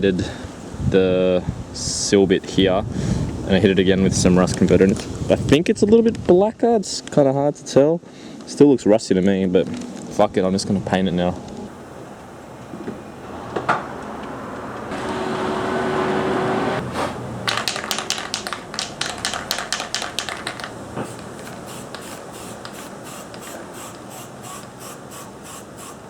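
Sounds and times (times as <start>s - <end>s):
spray can ball rattling: 17.3s - 24.8s
aerosol spray can hissing: 17.9s - 26.0s.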